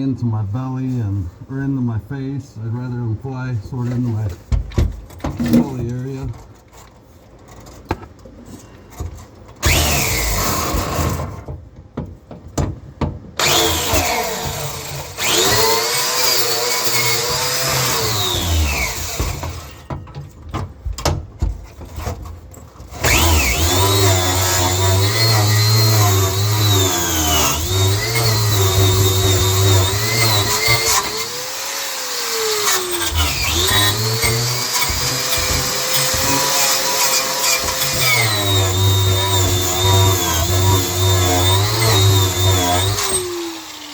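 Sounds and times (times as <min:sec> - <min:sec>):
angle grinder wire wheel brushing steel: 0:23.0 - 0:43.3.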